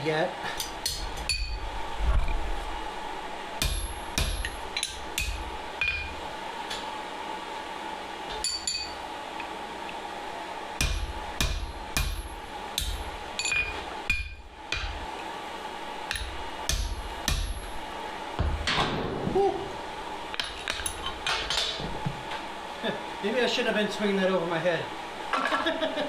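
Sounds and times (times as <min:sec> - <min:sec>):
faint steady hum: 0:00.0 - 0:26.0
hammer striking punch on steel: 0:03.6 - 0:06.1, 0:10.8 - 0:15.0, 0:16.1 - 0:17.7.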